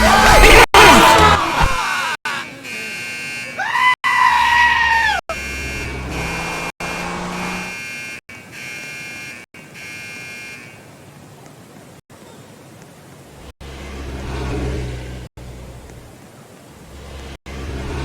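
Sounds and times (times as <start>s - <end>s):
fire alarm tone: 2.3s - 3.6s, 5.3s - 10.7s.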